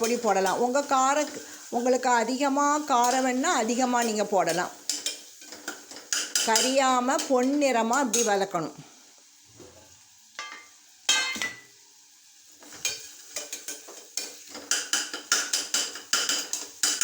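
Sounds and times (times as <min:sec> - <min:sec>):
light sizzle: 0:00.0 - 0:17.0
metal spoon scraping a pan: 0:02.9 - 0:08.4, 0:12.6 - 0:17.0
metal clinking on pan: 0:10.4 - 0:11.7, 0:12.7 - 0:17.0.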